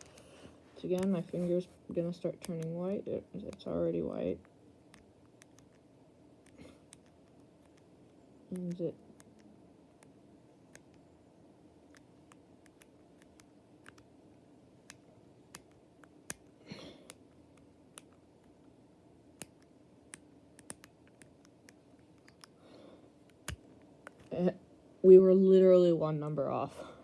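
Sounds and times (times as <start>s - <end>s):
soft rustle: 0.0s - 2.1s.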